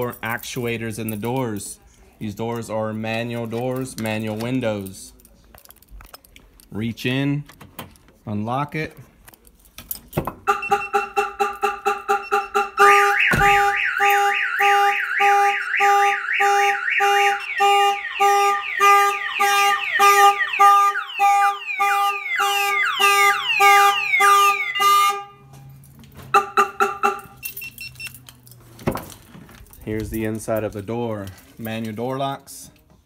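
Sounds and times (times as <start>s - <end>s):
car alarm siren: 10.4s - 25.5s, 26.3s - 28.1s.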